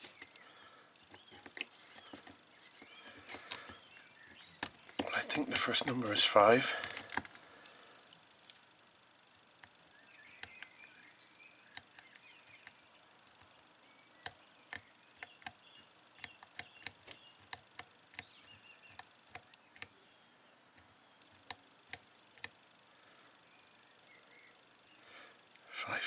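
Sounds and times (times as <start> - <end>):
combination lock dials clicking: 4.5 - 7.3.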